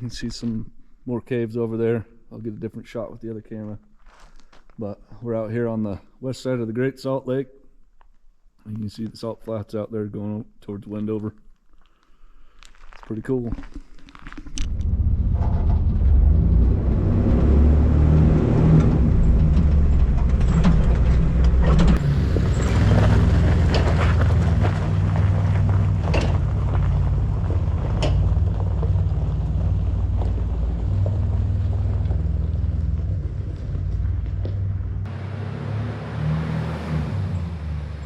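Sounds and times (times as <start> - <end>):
jeep engine rumble: 14.6 - 38.0.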